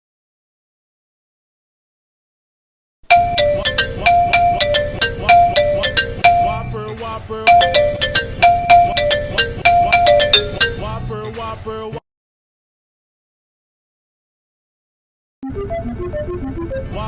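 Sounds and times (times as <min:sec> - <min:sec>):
ringtone melody: 0:03.1 - 0:06.9, 0:07.5 - 0:11.1.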